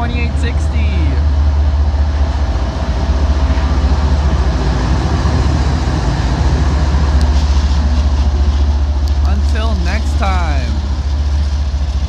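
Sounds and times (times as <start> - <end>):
freight train rumbling past: 0.0 - 12.0.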